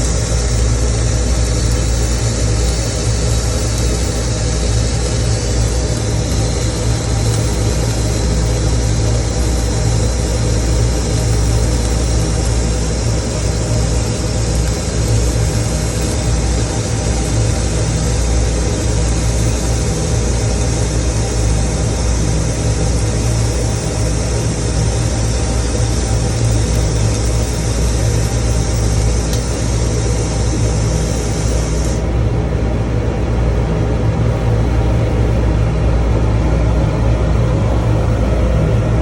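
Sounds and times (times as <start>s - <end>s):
welding arc crackling hiss: 0.0s - 32.1s
low hum: 34.3s - 39.0s.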